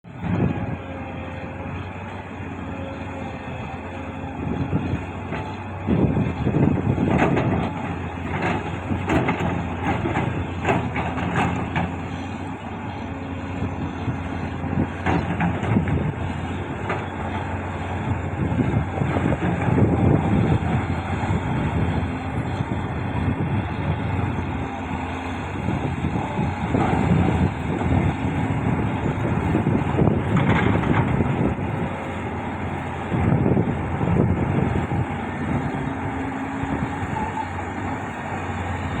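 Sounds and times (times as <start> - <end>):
heavy machine diesel engine: 0.0 - 39.0.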